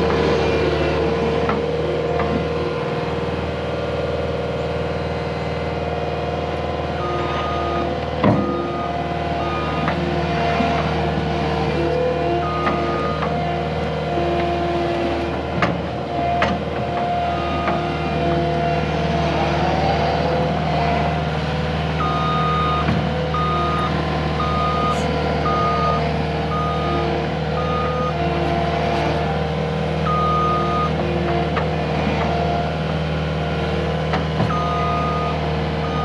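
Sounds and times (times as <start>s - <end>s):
diesel engine running: 0.0s - 36.0s
reversing alarm beeping: 7.0s - 10.0s, 12.4s - 13.3s, 17.3s - 17.9s, 22.0s - 28.2s, 30.0s - 31.0s, 34.5s - 36.0s.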